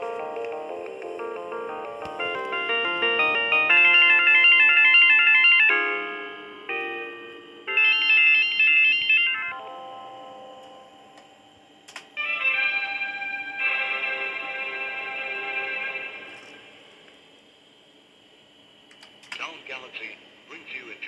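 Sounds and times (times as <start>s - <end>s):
synthesized computer music: 0.0s - 10.2s.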